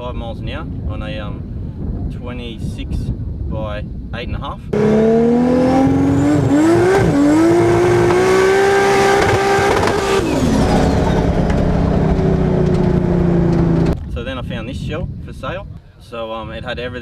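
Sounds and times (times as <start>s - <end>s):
turbocharged car engine revving: 4.8s - 14.0s.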